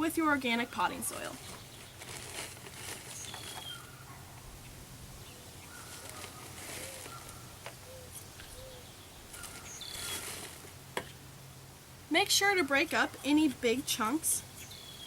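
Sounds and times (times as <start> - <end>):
bird chirps: 3.1 - 10.2, 14.5 - 15.0.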